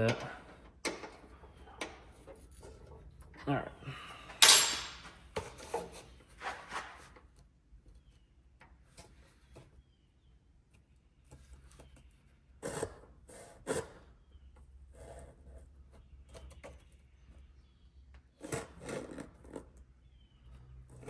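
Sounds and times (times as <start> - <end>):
metal vise scraping: 4.3 - 6.6.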